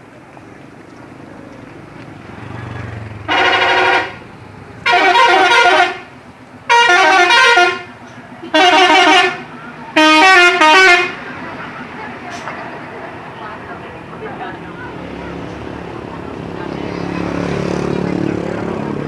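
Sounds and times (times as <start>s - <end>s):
multi-tone musical bus horn: 3.2s - 4.2s, 4.8s - 11.5s.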